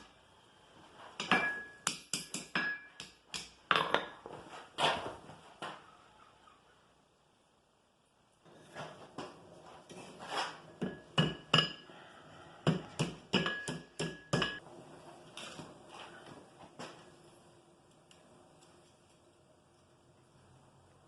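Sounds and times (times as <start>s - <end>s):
hammer striking iron on anvil: 1.2s - 3.6s, 10.8s - 11.8s, 12.7s - 14.6s.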